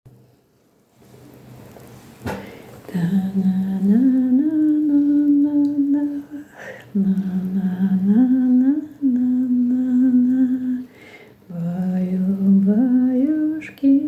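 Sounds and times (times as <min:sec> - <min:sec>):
person humming a lullaby: 0:02.9 - 0:10.9
short breath: 0:10.9 - 0:11.4.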